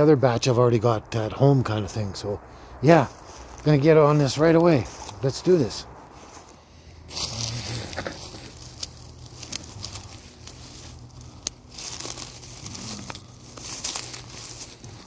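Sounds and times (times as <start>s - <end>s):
plants rustling and crinkling: 2.9s - 15.0s
sharp snaps of stems: 7.1s - 14.5s.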